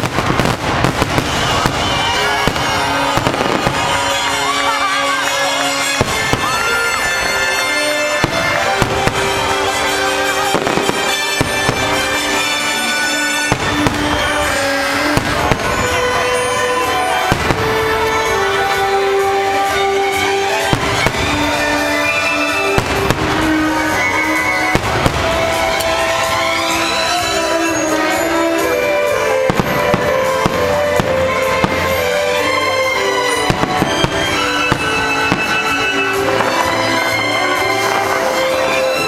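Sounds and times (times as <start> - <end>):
fireworks bursting and crackling: 0.0 - 39.0
loud show music: 0.0 - 39.0.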